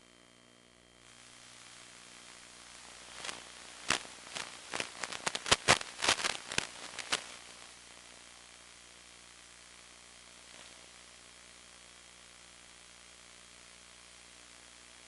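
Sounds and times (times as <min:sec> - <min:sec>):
faint hum: 0:00.0 - 0:15.0
static crackles and pops: 0:00.0 - 0:15.0
steady hiss: 0:01.0 - 0:15.0.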